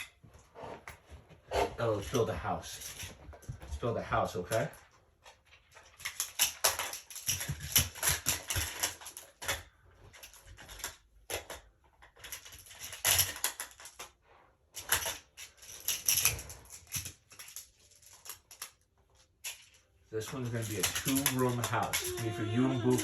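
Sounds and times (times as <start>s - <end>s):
plastic tiles clacking together: 5.6s - 14.2s, 14.8s - 23.0s.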